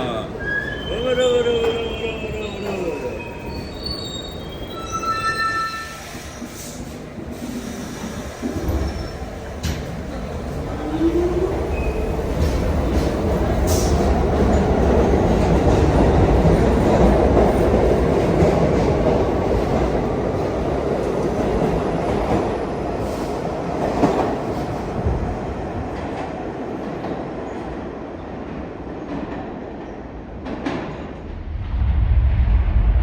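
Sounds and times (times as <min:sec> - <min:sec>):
subway train rumbling: 0:00.0 - 0:33.0.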